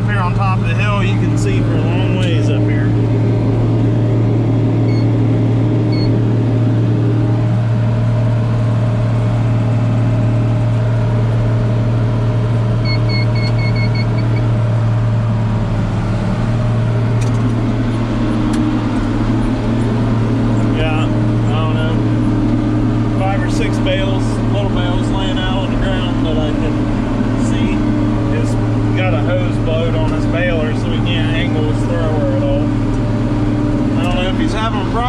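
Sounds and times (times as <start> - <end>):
tractor engine droning: 0.0 - 35.0
short electronic beeps: 4.8 - 5.2, 5.9 - 6.2, 12.8 - 14.5.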